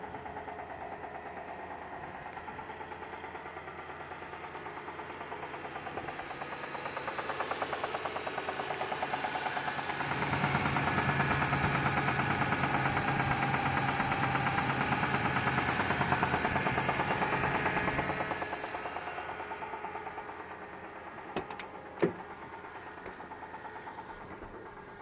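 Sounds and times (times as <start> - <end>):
engine running with rapid knock: 0.0 - 25.0.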